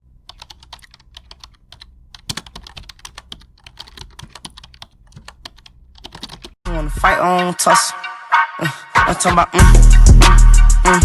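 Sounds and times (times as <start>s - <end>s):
rapid clicks and taps: 0.2s - 6.6s.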